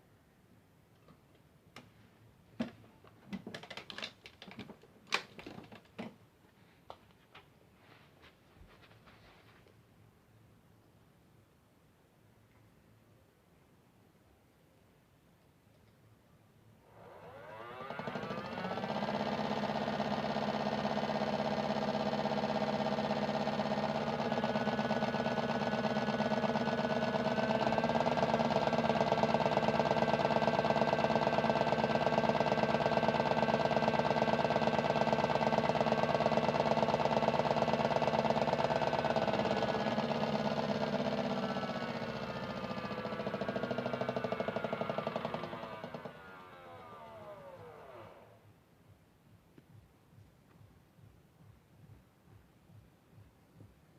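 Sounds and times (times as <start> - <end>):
washing machine drum spinning: 17.8 - 46.2.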